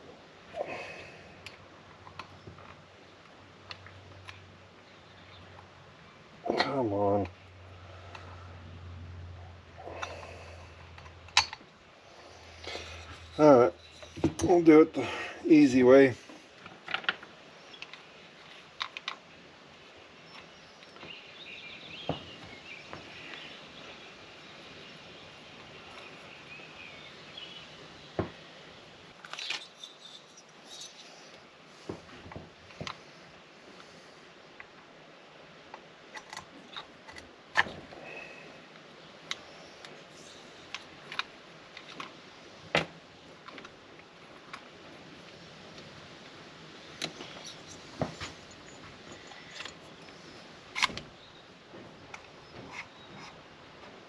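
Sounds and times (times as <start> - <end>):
birds chirping faintly: 0.6 - 16.6, 17.2 - 37.1, 37.7 - 54.0
handling metal parts and tools: 9.8 - 11.7, 12.5 - 15.8, 29.2 - 31.4, 46.9 - 51.0
tools and metal parts clicking: 47.0 - 49.9.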